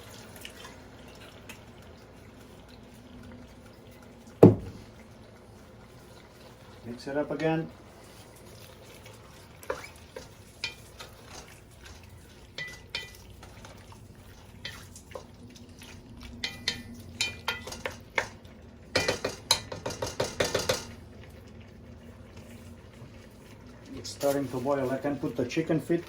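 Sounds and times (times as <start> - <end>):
spoon stirring in pot: 7.4 - 21.0.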